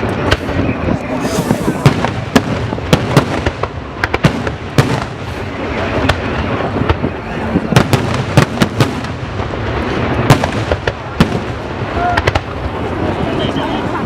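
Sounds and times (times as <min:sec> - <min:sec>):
fireworks bangs: 0:00.0 - 0:14.0
fireworks crackling: 0:00.0 - 0:14.0.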